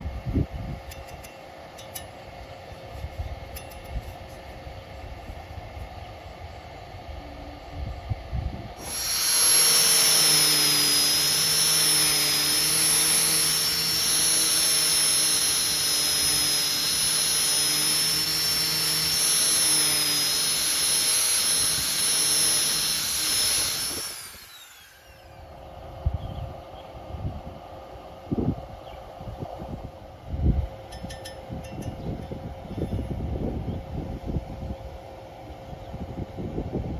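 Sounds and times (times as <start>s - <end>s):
angle grinder whining: 8.7s - 26.4s.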